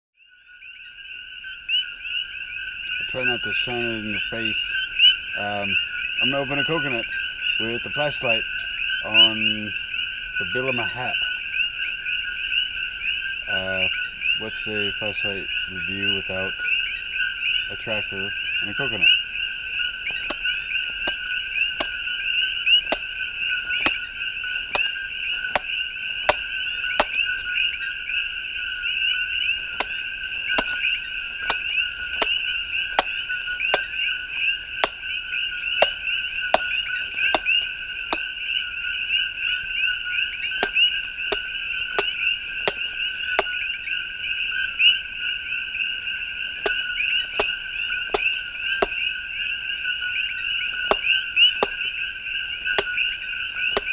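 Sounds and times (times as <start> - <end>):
frogs calling: 0.2 - 53.9
knife chopping coconut: 20.1 - 22.0, 22.8 - 23.1, 23.7 - 27.2, 29.7 - 34.0, 34.8 - 35.0, 35.7 - 38.3, 40.6 - 43.5, 46.6 - 49.0, 50.8 - 51.8, 52.6 - 53.9.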